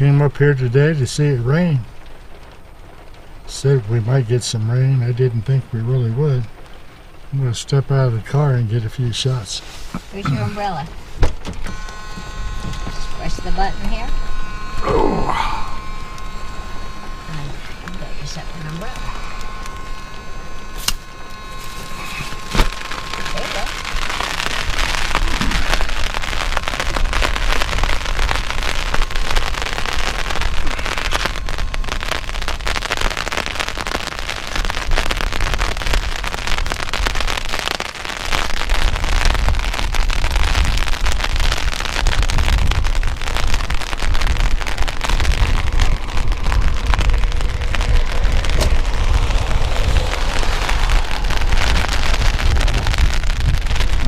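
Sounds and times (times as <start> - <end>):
rain pattering on an umbrella: 0.0 - 54.0
wind buffeting microphone: 38.2 - 54.0.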